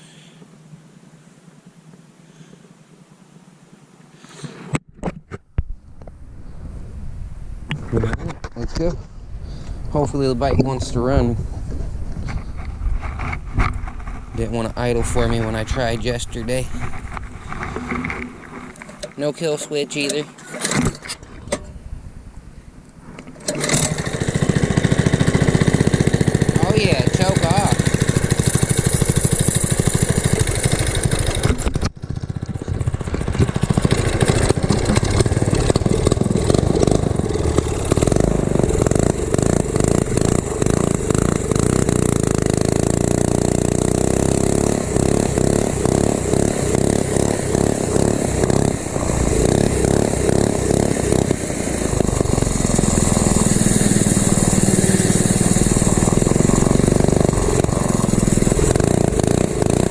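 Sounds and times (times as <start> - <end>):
small engine revving: 23.3 - 59.9.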